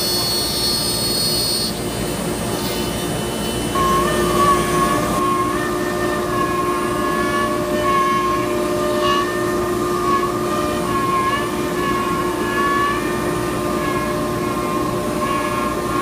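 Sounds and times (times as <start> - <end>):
cnc router whining: 0.0 - 16.0.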